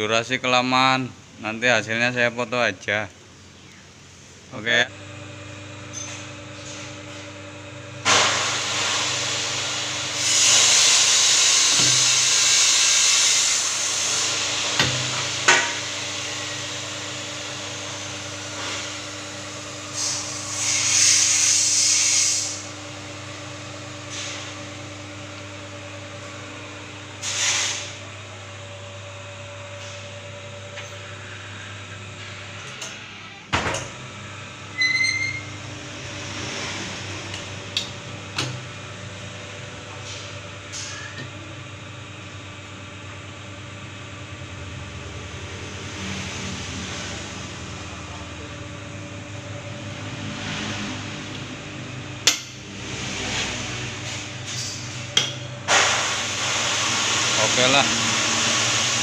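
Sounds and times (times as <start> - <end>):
bending machine motor hum: 0.5 - 59.0
loud hissing noise: 8.0 - 17.0, 19.7 - 24.5, 27.2 - 28.0, 55.7 - 59.0.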